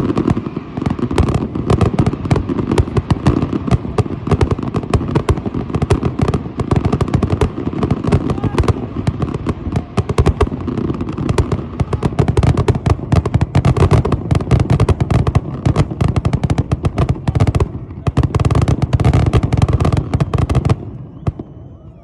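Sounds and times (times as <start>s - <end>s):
fireworks crackling: 0.0s - 22.0s.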